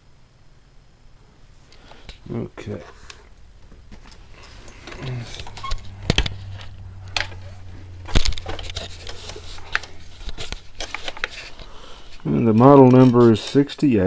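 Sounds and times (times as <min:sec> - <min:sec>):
low steady hum: 0:00.0 - 0:14.0
sharp handling clicks and knocks: 0:03.0 - 0:13.3.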